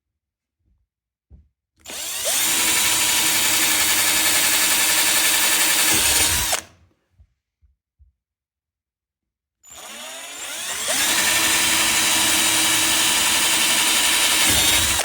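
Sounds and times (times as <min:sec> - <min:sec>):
power drill boring through wood: 0:01.8 - 0:06.7, 0:09.7 - 0:15.0.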